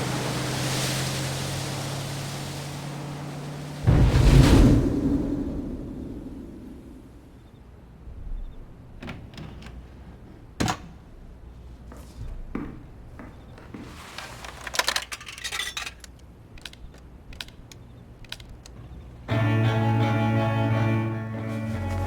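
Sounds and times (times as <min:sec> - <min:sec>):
small hard objects clattering: 0:14.0 - 0:17.6
music with sustained notes: 0:19.3 - 0:22.0.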